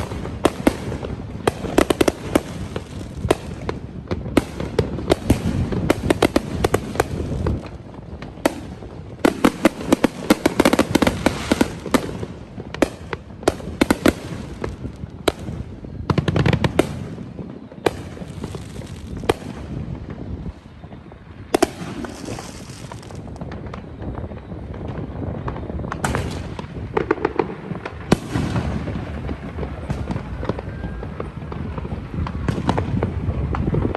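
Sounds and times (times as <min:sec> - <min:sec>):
fireworks bangs: 0:00.0 - 0:33.9
fireworks crackling pops: 0:00.0 - 0:33.9.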